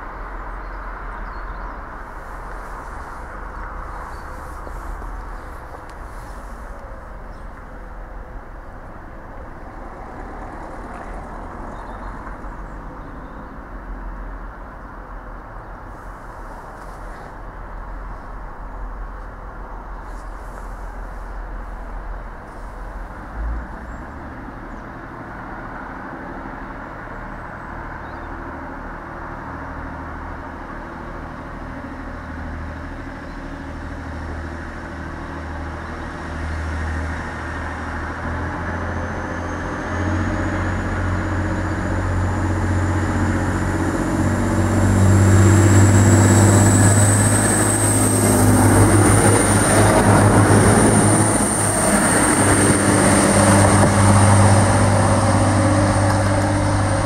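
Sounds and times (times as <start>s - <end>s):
train running hum: 0.0s - 27.6s, 28.5s - 57.0s
high whine rising in pitch: 39.8s - 57.0s.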